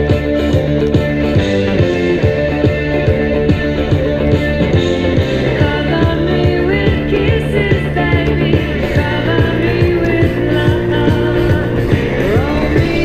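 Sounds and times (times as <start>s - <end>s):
rock song with vocals: 1.2s - 13.0s.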